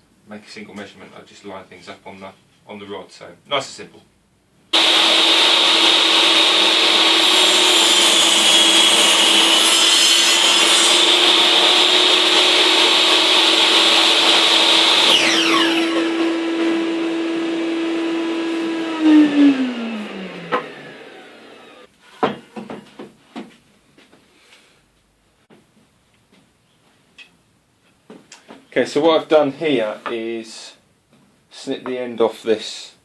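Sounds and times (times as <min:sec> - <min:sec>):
power saw cutting timber: 0:04.8 - 0:21.9.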